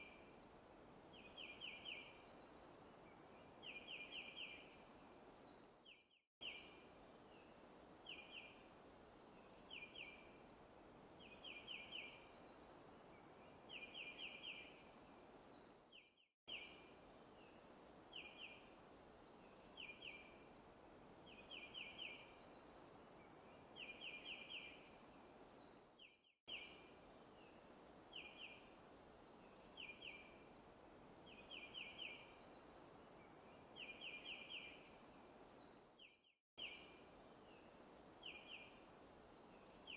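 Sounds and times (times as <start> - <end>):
soft hiss of forest ambience: 0.0 - 39.9.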